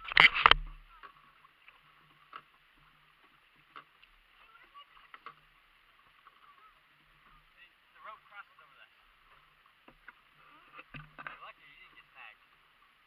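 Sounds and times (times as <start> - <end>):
distant bird calls: 4.3 - 12.4.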